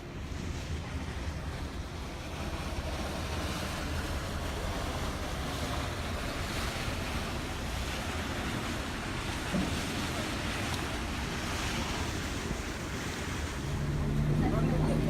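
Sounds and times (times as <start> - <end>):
harbour water: 0.0 - 15.0.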